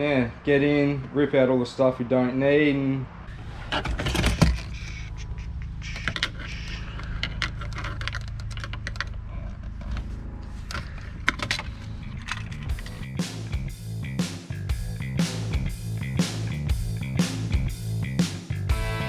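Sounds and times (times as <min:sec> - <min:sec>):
steady low hum: 0:04.5 - 0:19.0.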